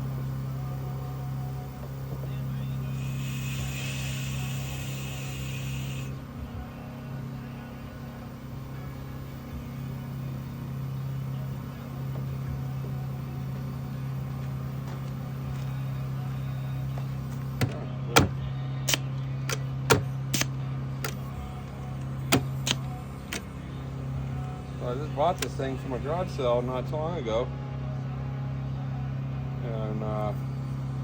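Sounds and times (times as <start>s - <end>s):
air compressor humming: 0.0s - 31.0s
sharp knocks and clicks: 17.6s - 21.2s.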